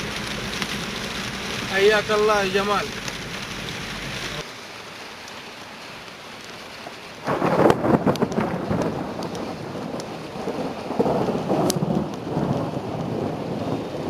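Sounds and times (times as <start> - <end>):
heavy rain hissing: 0.0 - 14.0
crackling thunder peal: 7.2 - 14.0.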